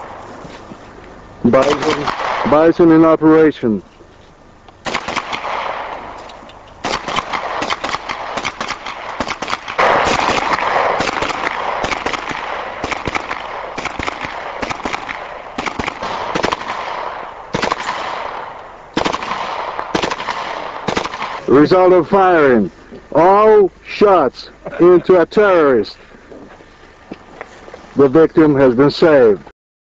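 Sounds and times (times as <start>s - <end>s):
gunshot echo: 1.5s - 2.7s, 4.8s - 21.5s
submachine gun firing bursts: 1.5s - 2.7s, 4.8s - 6.1s, 6.8s - 21.5s.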